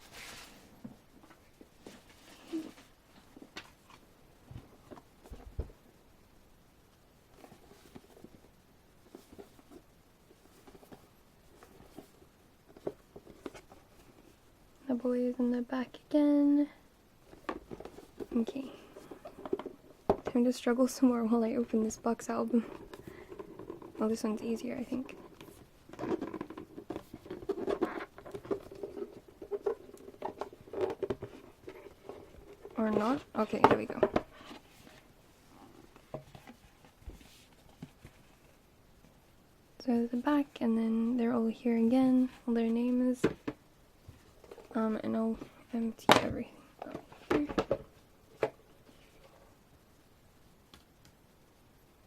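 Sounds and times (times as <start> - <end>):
box being handled: 7.4 - 14.4, 17.2 - 20.3, 22.6 - 35.1.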